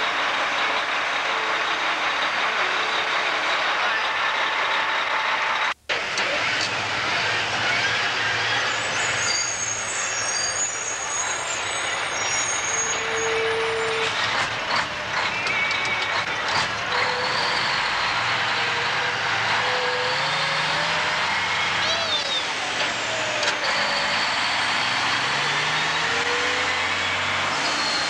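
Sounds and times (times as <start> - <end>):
truck diesel engine driving: 0.0 - 28.0
thin high squeals: 8.5 - 14.3.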